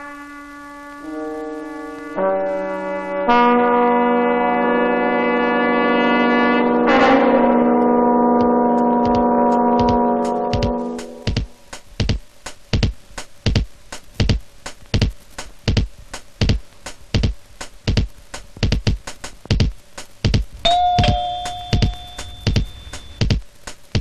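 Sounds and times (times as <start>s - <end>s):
bell ding: 20.7s - 23.2s.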